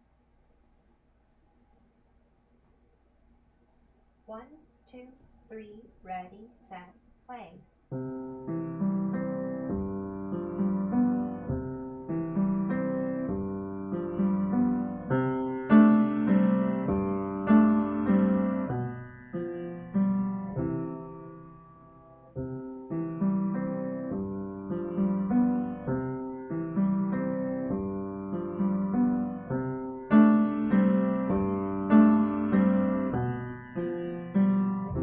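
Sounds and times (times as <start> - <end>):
piano piece: 7.9 - 35.0.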